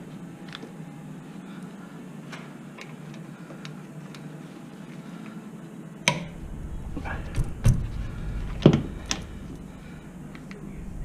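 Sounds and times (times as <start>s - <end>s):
low rumble: 6.2s - 11.0s.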